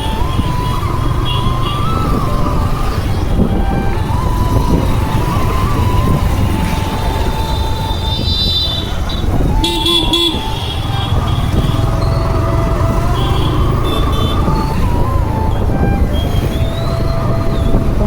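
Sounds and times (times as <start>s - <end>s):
low rumble of engines: 0.0s - 18.0s
wind: 0.0s - 18.0s
vehicle horns honking: 8.1s - 14.5s.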